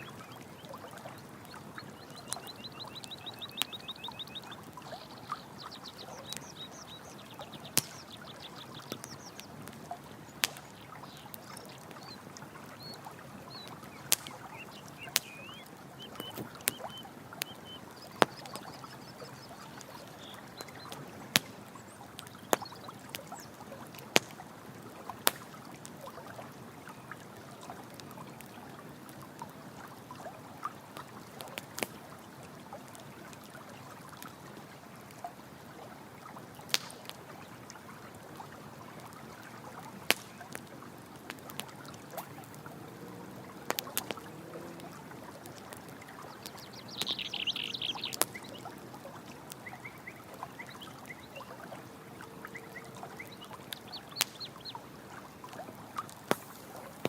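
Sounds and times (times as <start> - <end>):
campfire crackling and popping: 0.0 - 57.0
running stream water: 0.0 - 57.0
high rippling animal call: 10.2 - 22.9, 46.2 - 54.9.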